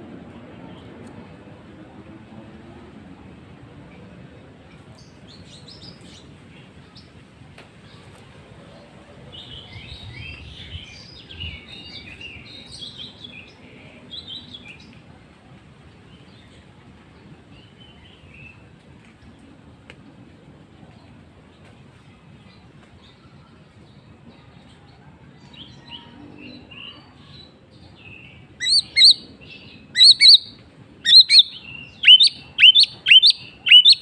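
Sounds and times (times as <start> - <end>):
songbird singing varied phrases: 25.9 - 34.0.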